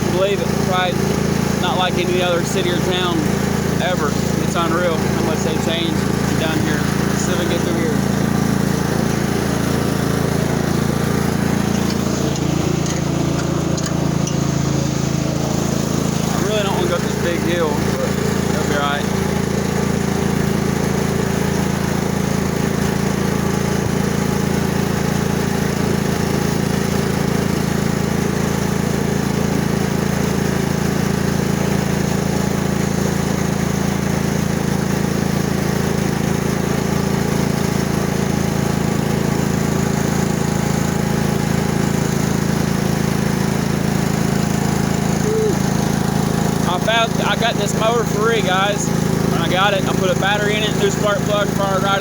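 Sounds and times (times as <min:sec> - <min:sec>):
riding lawn mower engine running: 0:00.0 - 0:52.0.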